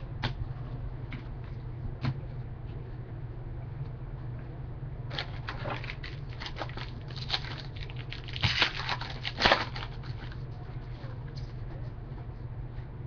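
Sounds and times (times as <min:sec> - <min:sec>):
cards and packaging crackling: 0:05.1 - 0:10.4.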